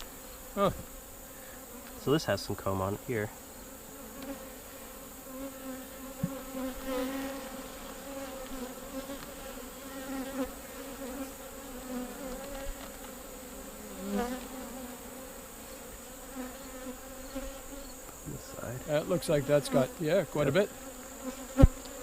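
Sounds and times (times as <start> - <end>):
bees buzzing: 0.0 - 22.0
bee flying past microphone: 3.4 - 18.1, 20.7 - 22.0.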